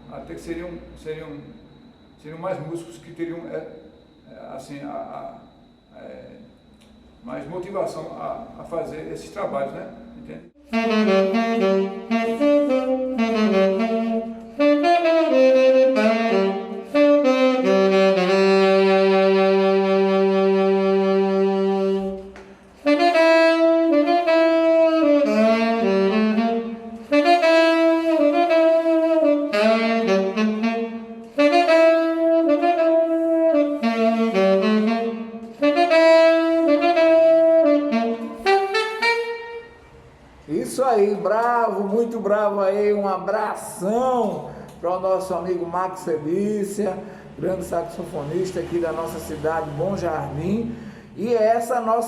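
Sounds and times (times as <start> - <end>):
saxophone melody: 10.6 - 40.3
player breathing: 47.0 - 47.4, 50.7 - 51.2.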